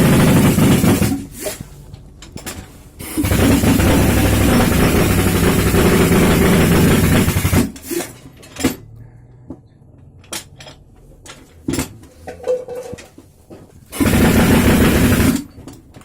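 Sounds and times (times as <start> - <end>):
jackhammer hammering: 0.0 - 1.5, 3.0 - 8.1, 13.9 - 15.7.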